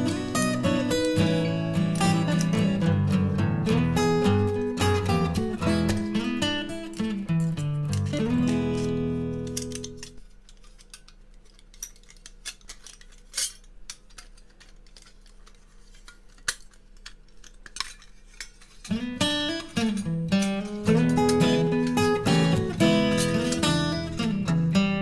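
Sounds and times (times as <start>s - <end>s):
acoustic guitar music: 0.0s - 10.2s, 18.9s - 25.0s.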